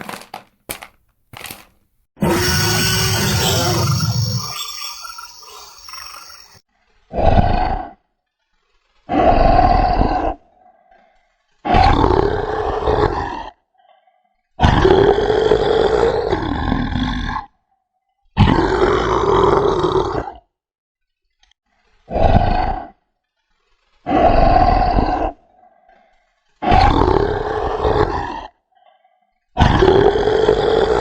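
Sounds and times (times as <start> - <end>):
dinosaur roars: 2.2 - 8.1, 9.1 - 10.6, 11.7 - 13.6, 26.6 - 28.6, 29.6 - 31.0.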